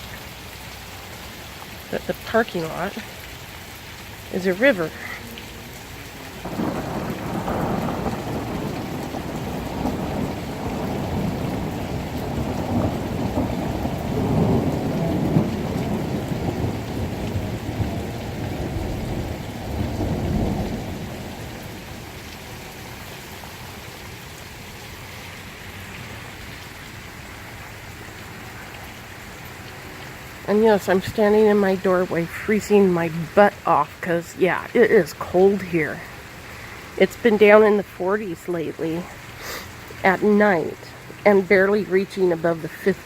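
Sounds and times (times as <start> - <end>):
steady rain falling: 0.0 - 43.0
thunder rumbling: 4.5 - 22.5.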